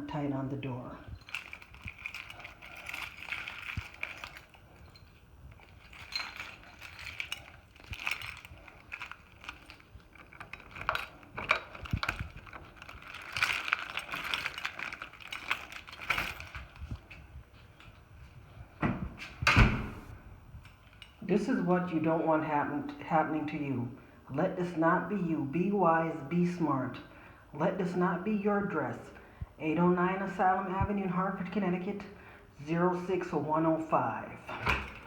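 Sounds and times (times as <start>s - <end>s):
metal lock ring rattling: 1.1s - 17.0s, 34.5s - 35.0s.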